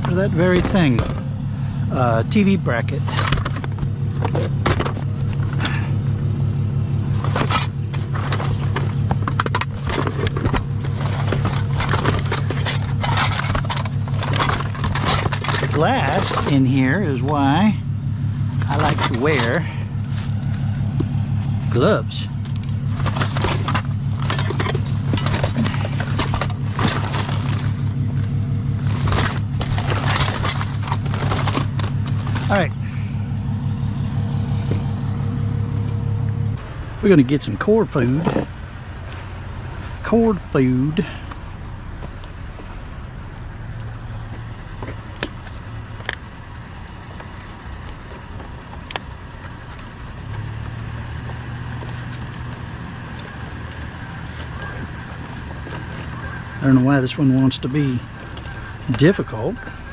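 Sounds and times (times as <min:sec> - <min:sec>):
low engine hum: 0:00.0 - 0:59.9
scrap metal clanking: 0:02.8 - 0:06.1, 0:07.1 - 0:17.4, 0:18.6 - 0:33.3.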